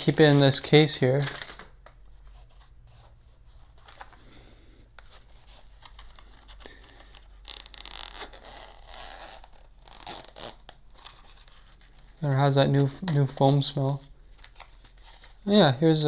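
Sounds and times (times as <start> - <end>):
zipper pulled open: 7.4 - 10.6.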